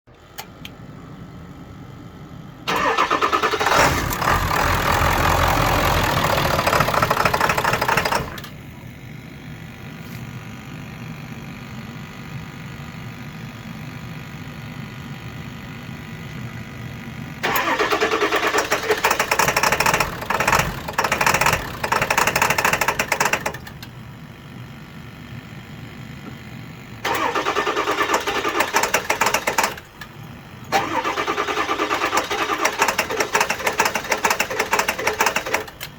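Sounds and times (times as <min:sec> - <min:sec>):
engine idling roughly: 0:02.7 - 0:08.6, 0:17.4 - 0:24.3, 0:26.4 - 0:35.9.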